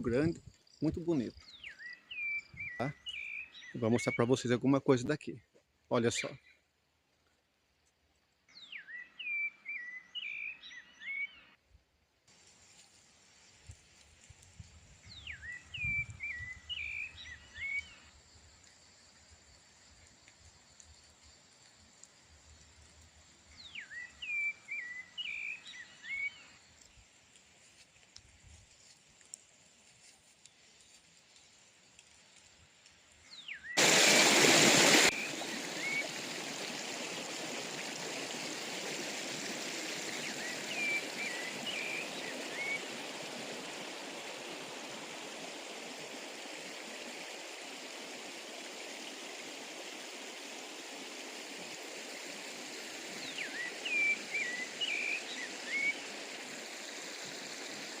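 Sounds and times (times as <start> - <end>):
whistled bird calls: 1.2 - 4.3, 8.5 - 11.6, 15.1 - 18.1, 23.6 - 26.6, 33.3 - 34.2, 34.9 - 36.9, 39.9 - 43.6, 53.2 - 56.1
stream rushing over rocks: 33.7 - 58.0
loud rush of noise: 33.8 - 37.1.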